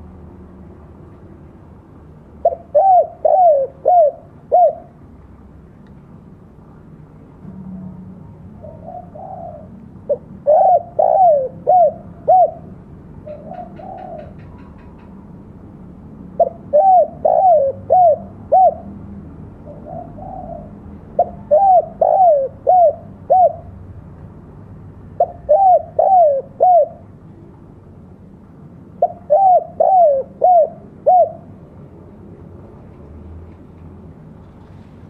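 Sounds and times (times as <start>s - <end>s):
dove cooing: 2.4s - 5.0s, 8.6s - 15.0s, 16.4s - 18.9s, 19.6s - 23.7s, 25.2s - 27.1s, 29.0s - 31.5s.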